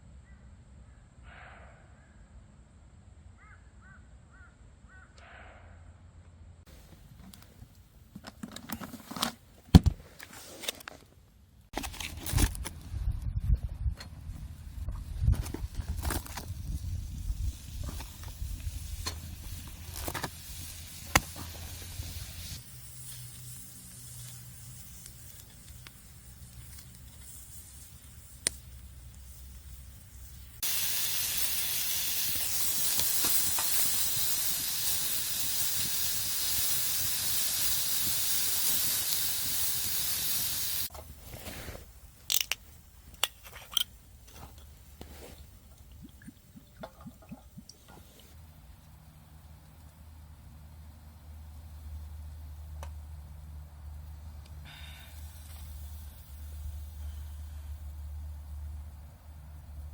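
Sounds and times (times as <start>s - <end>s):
steady hiss of gas jet: 16.8s - 40.9s.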